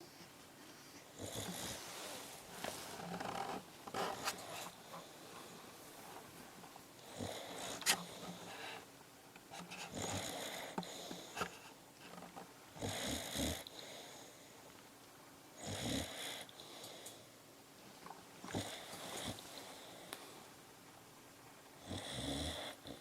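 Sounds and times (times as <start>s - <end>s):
pet snoring: 0.7s - 5.6s, 7.0s - 8.8s, 9.8s - 11.5s, 12.8s - 14.3s, 15.6s - 16.8s, 18.5s - 20.0s, 21.8s - 23.0s.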